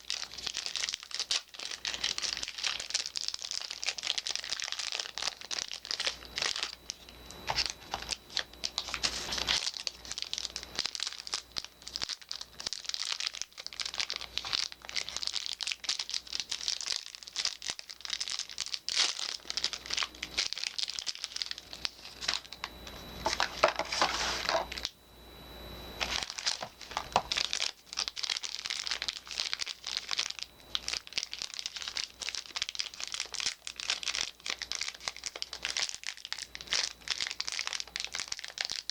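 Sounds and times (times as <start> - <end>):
soap wrappers crinkling and tearing: 0.0 - 24.9, 26.0 - 38.9.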